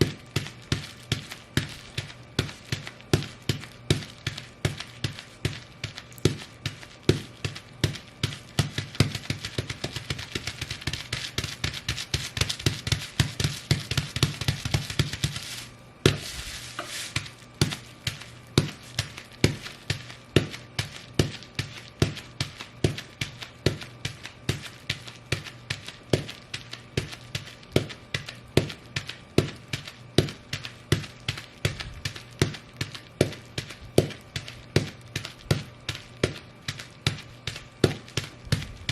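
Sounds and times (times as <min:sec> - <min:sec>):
bubble wrap popping: 0:00.0 - 0:38.9
boots stomping: 0:28.6 - 0:38.9.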